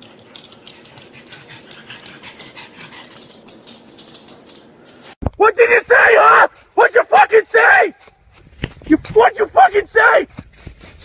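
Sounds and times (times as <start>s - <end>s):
dog panting: 0.0s - 4.5s.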